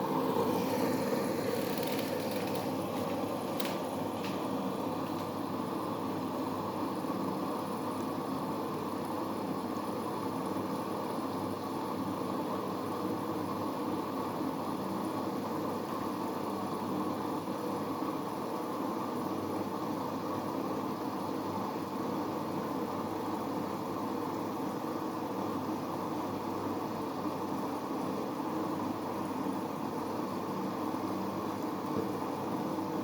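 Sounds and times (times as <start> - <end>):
washing machine running: 0.0 - 33.0.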